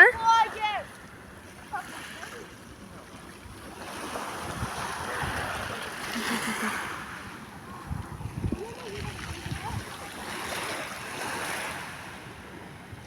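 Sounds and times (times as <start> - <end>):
sea waves washing ashore: 0.0 - 13.0
wind buffeting microphone: 3.4 - 6.2, 6.8 - 13.0.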